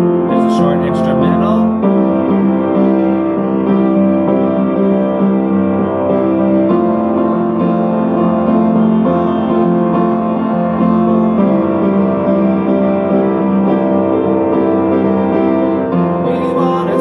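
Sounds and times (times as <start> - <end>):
piano playing sustained chords: 0.0 - 17.0.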